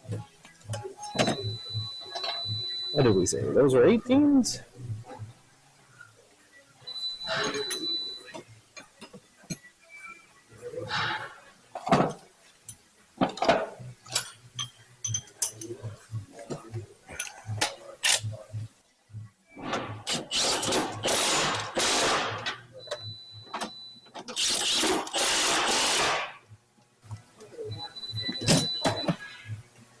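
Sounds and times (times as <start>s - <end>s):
wrenches clicking on metal: 20.1s - 21.8s, 24.3s - 25.8s
wrench ratcheting: 20.1s - 22.1s, 24.3s - 26.1s.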